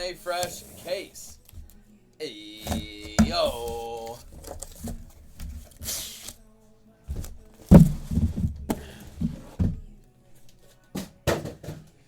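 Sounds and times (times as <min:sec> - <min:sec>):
rustling: 0:02.6 - 0:06.4.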